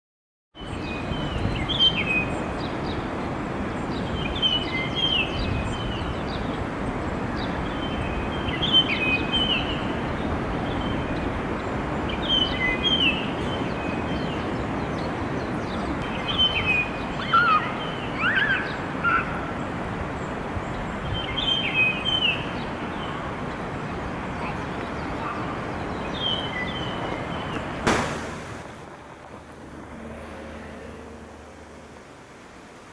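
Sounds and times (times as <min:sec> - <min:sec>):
bird whistled song: 0:16.1 - 0:19.3
outdoor background rumble: 0:27.1 - 0:32.9.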